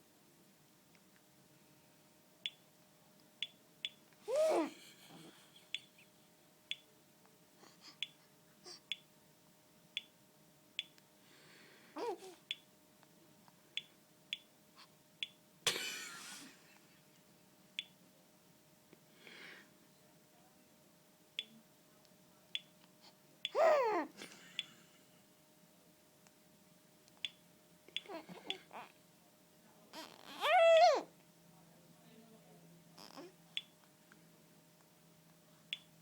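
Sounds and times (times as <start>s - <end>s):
baby whimpering cries: 4.3s - 4.8s, 12.0s - 12.4s, 23.6s - 24.1s, 29.9s - 31.1s.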